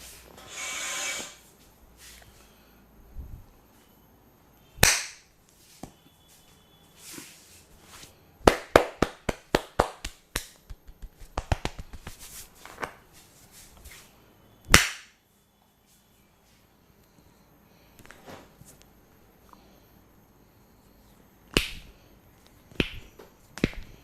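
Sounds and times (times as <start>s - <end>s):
hand slaps on head: 4.8s - 5.2s, 8.5s - 12.2s, 21.6s - 21.9s.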